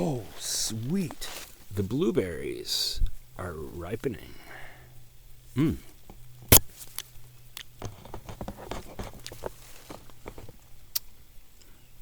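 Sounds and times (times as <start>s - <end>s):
footsteps on leaves and twigs: 0.7s - 1.8s, 8.6s - 10.6s.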